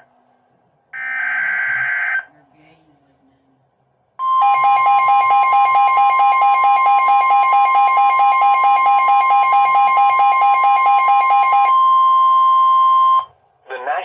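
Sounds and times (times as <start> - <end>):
two-tone alert alarm: 4.2 - 13.3.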